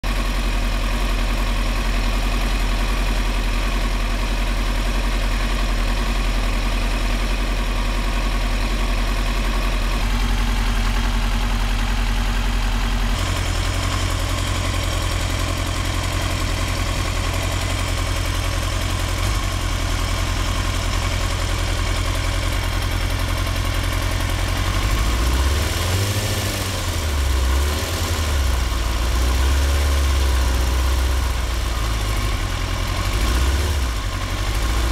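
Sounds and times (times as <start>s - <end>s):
motorcycle engine idling roughly: 0.0s - 34.9s
engine revving: 13.1s - 22.9s, 24.0s - 34.9s.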